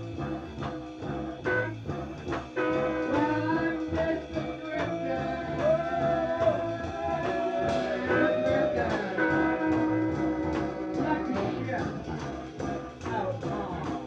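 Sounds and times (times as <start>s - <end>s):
bending melody line: 0.0s - 13.9s
rock band playing live: 0.0s - 14.0s.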